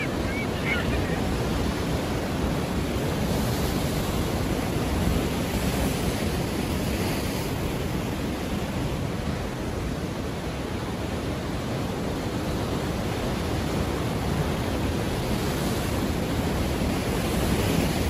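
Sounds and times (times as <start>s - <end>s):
ocean surf washing in: 0.0s - 18.0s.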